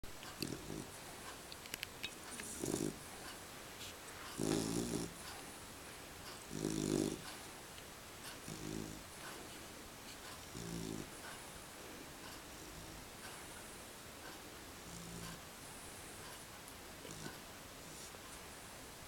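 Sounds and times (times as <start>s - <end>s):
animal snoring: 0.2s - 1.4s, 2.3s - 3.4s, 4.3s - 5.6s, 6.3s - 7.5s, 8.2s - 9.4s, 10.2s - 11.5s, 12.2s - 16.4s, 17.0s - 18.3s.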